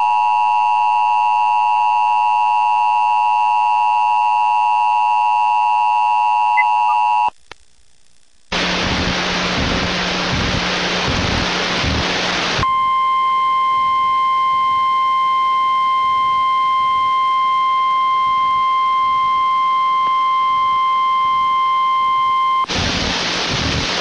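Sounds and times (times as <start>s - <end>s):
loud steady hiss: 8.5s - 12.6s, 22.6s - 24.0s.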